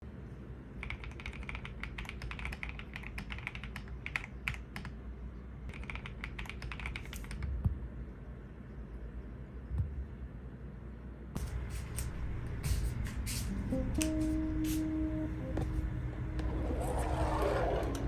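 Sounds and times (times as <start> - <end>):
mechanical keyboard keystrokes: 0.8 - 4.9, 5.7 - 7.5.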